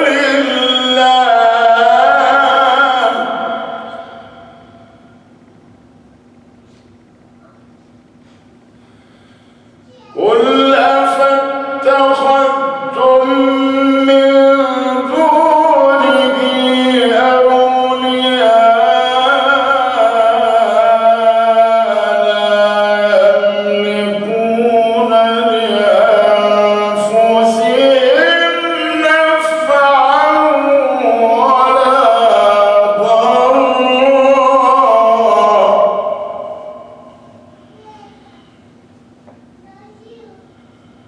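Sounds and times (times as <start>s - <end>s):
man chanting melodically: 0.0s - 5.2s, 10.0s - 37.5s.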